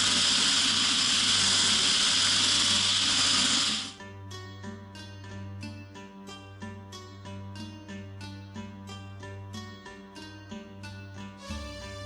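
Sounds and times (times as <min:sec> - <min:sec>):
power tool whirring: 0:00.0 - 0:04.0
plucked-string music with beat: 0:03.9 - 0:12.0.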